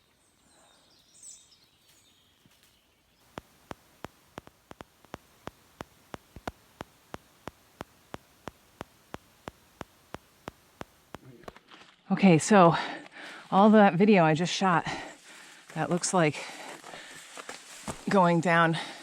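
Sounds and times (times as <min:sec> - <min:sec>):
faint outdoor background: 0:00.0 - 0:19.0
regular sharp clicks: 0:03.2 - 0:11.4.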